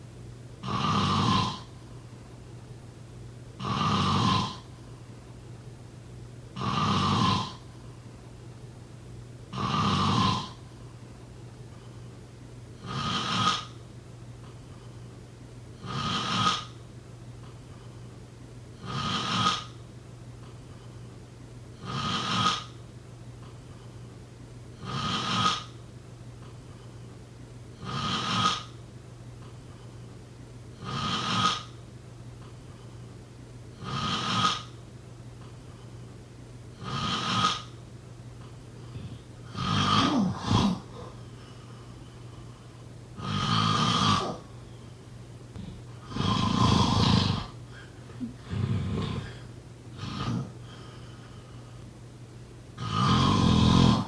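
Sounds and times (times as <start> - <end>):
steady low hum: 0.0 - 54.0
person snoring: 0.6 - 1.7, 3.6 - 4.7, 6.6 - 7.6, 9.5 - 10.6, 15.8 - 16.7, 21.8 - 22.7, 27.8 - 28.7, 30.8 - 31.7, 36.8 - 37.7, 38.9 - 41.2, 43.2 - 44.5, 45.5 - 51.3, 52.8 - 54.0.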